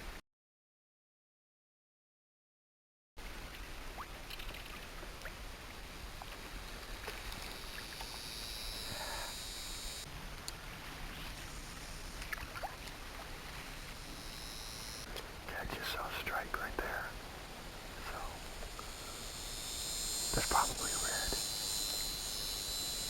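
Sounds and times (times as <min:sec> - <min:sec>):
wind: 0:03.2 - 0:23.0
high hiss: 0:05.8 - 0:23.0
water lapping against hull: 0:10.8 - 0:13.8.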